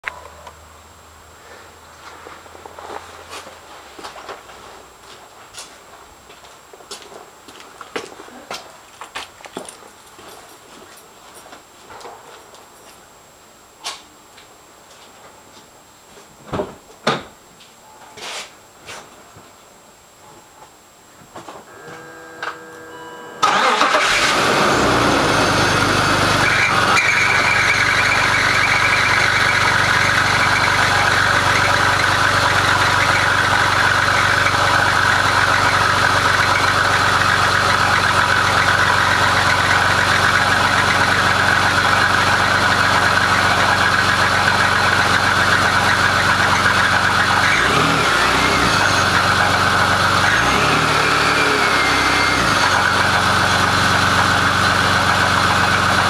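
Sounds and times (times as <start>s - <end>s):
car engine idling with rattle: 23.4s - 56.0s.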